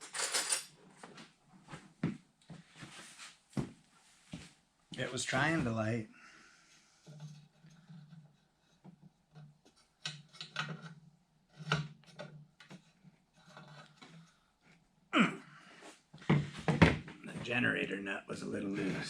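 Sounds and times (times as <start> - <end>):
metal clicks and scrapes: 0.0 - 0.7.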